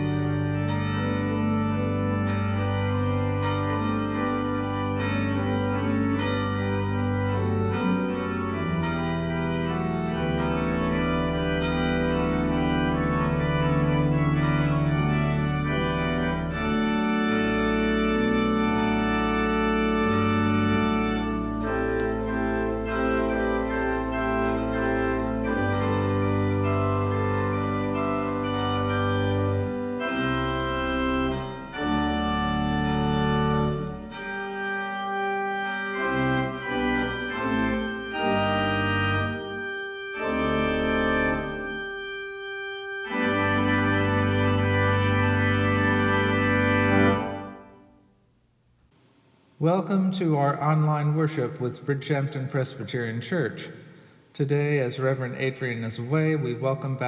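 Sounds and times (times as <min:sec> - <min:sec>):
organ chords: 0:00.0 - 0:48.9.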